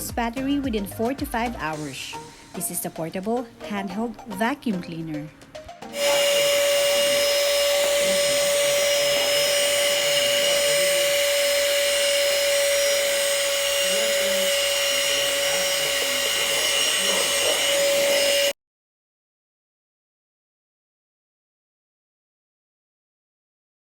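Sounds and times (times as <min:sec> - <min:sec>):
handheld vacuum cleaner running: 0:05.9 - 0:18.6.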